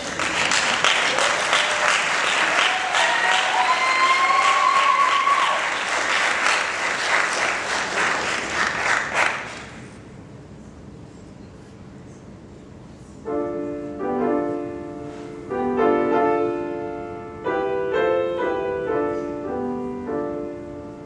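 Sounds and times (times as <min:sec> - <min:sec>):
audience applauding: 0:00.0 - 0:09.9.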